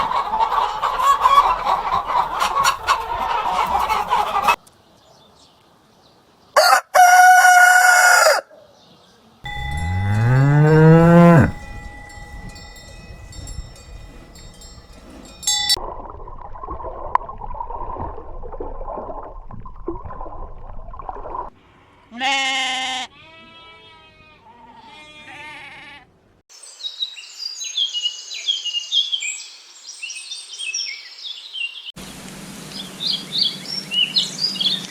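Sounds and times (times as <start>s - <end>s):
cow mooing: 9.5s - 13.4s
farm animal calls: 9.5s - 15.7s
small birds twittering: 32.7s - 34.9s.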